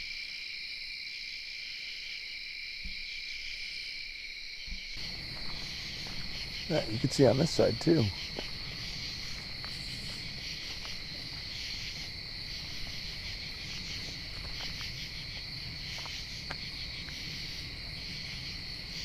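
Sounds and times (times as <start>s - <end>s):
crickets chirping: 0.0s - 19.0s
faint ticks: 16.0s - 17.3s.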